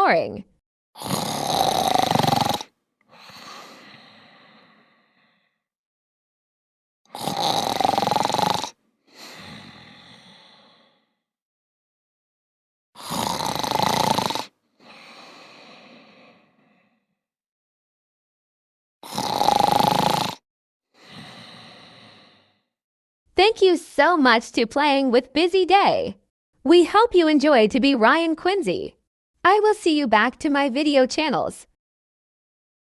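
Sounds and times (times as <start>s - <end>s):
person snoring: 1.0s - 5.6s, 7.1s - 11.2s, 13.0s - 17.1s, 19.0s - 20.4s, 21.0s - 22.7s
breathy exhale: 3.1s - 5.6s, 9.1s - 11.2s, 14.8s - 17.0s, 21.0s - 22.7s.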